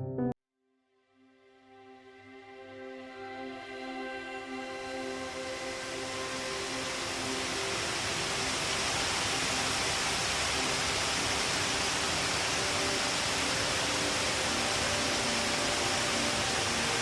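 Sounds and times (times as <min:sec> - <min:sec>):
faint background music: 0:01.4 - 0:17.0
waterfall rushing: 0:04.5 - 0:17.0.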